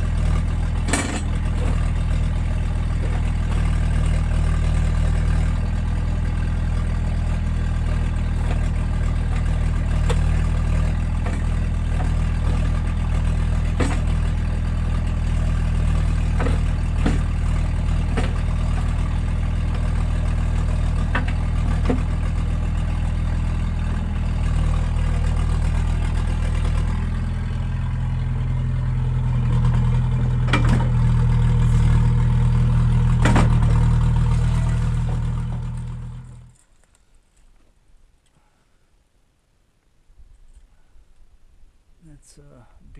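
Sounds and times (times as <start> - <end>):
excavator diesel engine running: 0.0 - 36.7
metallic clanks: 0.8 - 1.8.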